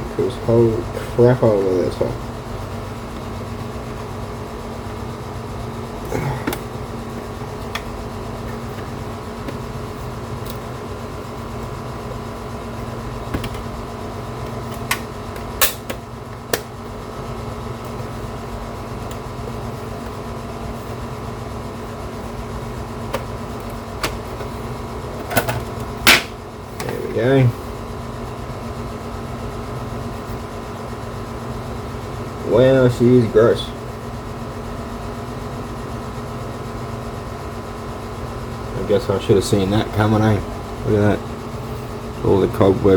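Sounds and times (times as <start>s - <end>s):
air conditioner hum: 0.0s - 42.9s.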